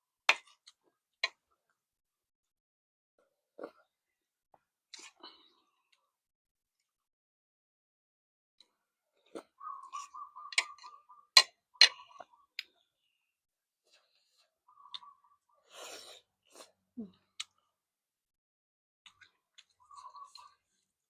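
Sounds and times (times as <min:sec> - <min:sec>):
slurping noodles: 0:15.6 - 0:16.8
chewing: 0:19.0 - 0:20.9.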